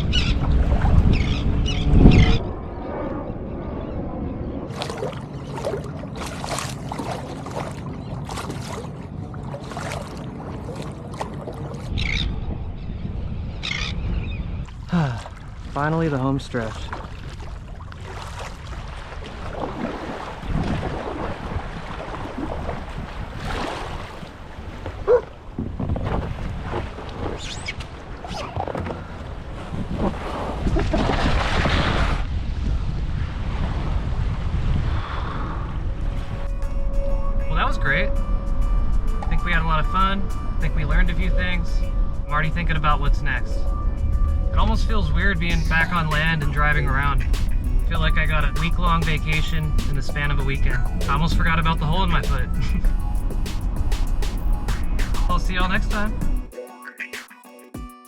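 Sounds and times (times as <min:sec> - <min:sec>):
wind rumble on microphone: 0:00.0 - 0:56.5
paddle splashing in water: 0:04.7 - 0:11.9, 0:16.6 - 0:32.3.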